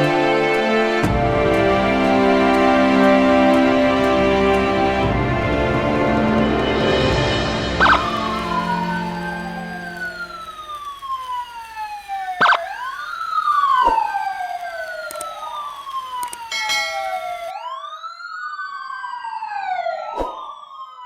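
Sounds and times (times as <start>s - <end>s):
siren wailing: 0.0s - 21.0s
sharp hits: 5.1s - 10.9s.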